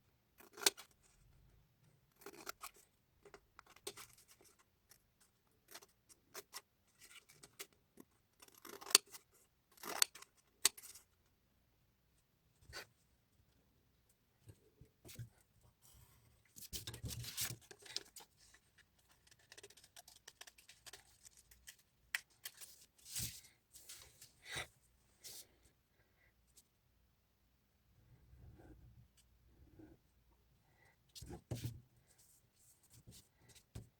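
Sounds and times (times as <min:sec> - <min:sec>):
scissors cutting paper: 0:02.2 - 0:02.8, 0:08.4 - 0:09.2.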